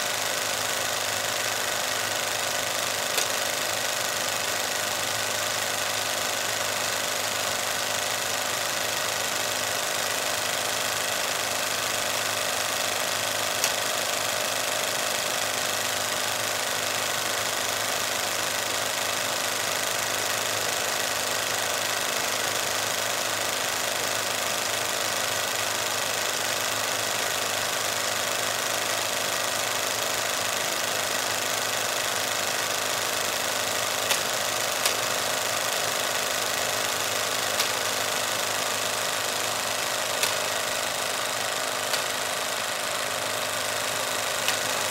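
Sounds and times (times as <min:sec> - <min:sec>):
film projector clatter: 0:00.0 - 0:44.9
motor hum: 0:00.0 - 0:44.9
sharp clicks: 0:02.9 - 0:03.8, 0:13.5 - 0:14.4, 0:33.8 - 0:44.9.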